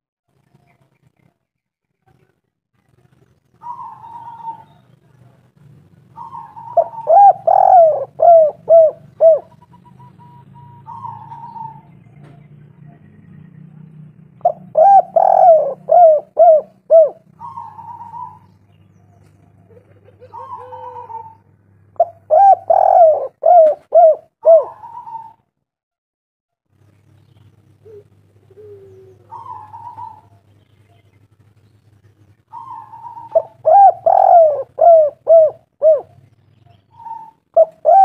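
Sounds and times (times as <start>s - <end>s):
dove cooing: 3.6s - 4.9s, 6.0s - 13.2s, 14.4s - 25.4s, 27.8s - 30.5s, 32.5s - 38.0s.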